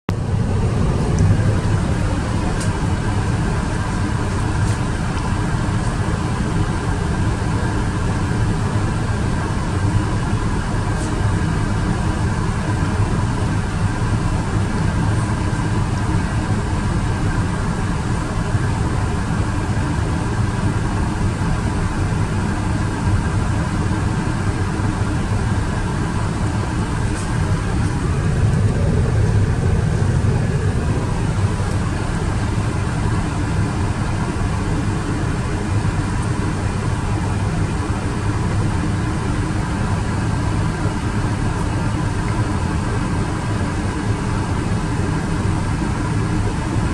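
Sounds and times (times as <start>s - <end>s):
airliner cabin engine drone: 0.1s - 46.9s
faint steady whine: 0.1s - 46.9s.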